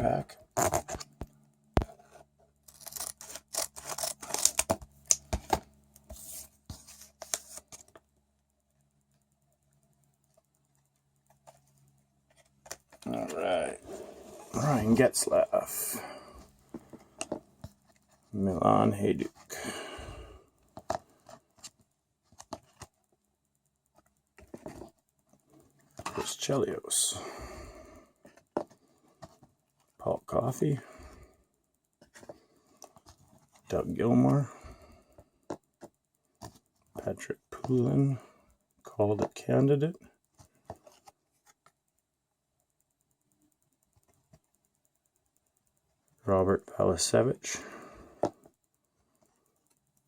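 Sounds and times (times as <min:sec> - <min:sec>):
trading cards clicking and rustling: 0:00.5 - 0:08.0
wrapper tearing and crinkling: 0:02.7 - 0:04.7.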